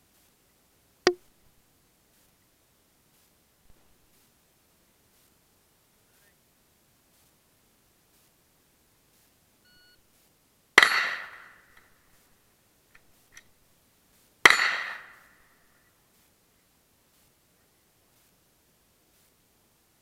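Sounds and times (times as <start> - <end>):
loud ringing impacts: 10.8 - 11.6, 14.5 - 15.3.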